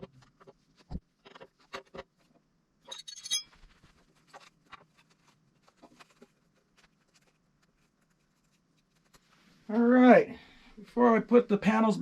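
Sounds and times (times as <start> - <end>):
small metal parts and tools clicking: 2.8 - 5.1
ringing metallic clink: 2.9 - 3.5.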